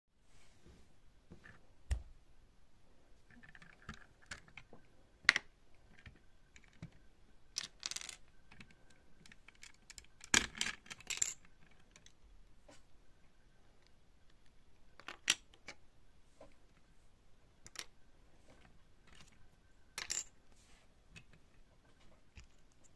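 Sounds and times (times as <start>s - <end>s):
plastic bricks clicking and rattling: 3.3s - 12.2s.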